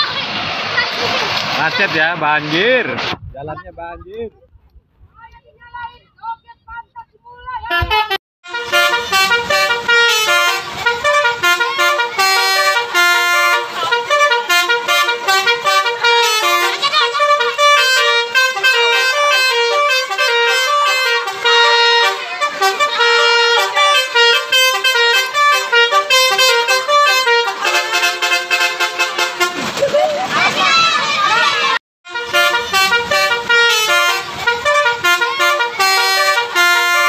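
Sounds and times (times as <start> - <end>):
multi-tone bus horn tune: 7.7 - 29.8, 32.1 - 37.0.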